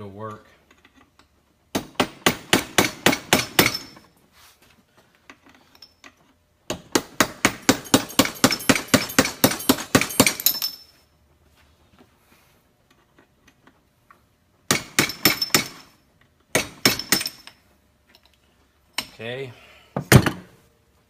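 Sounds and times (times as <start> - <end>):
hammer tapping metal punch: 6.7 - 10.8.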